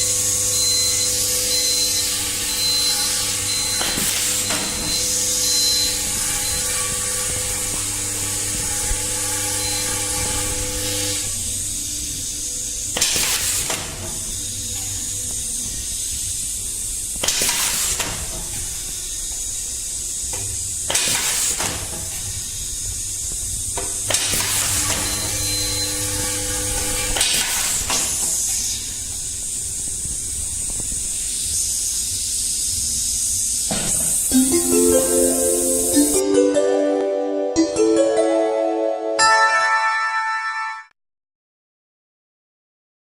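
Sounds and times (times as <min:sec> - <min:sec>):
rivet gun air bursts: 0:17.2 - 0:19.0, 0:24.1 - 0:25.2, 0:27.1 - 0:29.0
compressed air hissing: 0:27.1 - 0:36.2.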